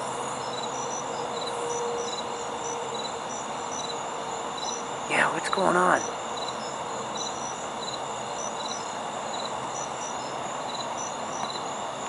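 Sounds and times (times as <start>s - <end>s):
crickets chirping: 0.0s - 12.0s.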